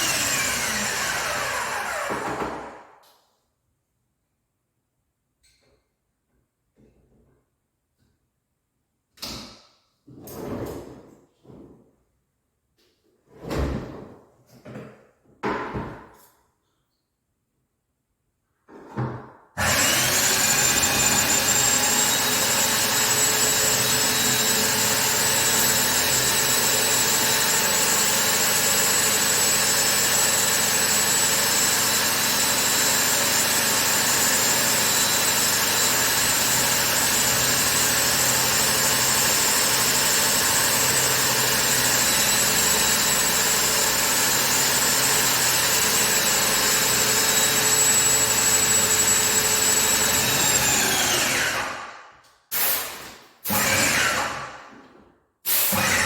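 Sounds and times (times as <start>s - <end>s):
paint sprayer whining drone: 19.6s - 51.6s.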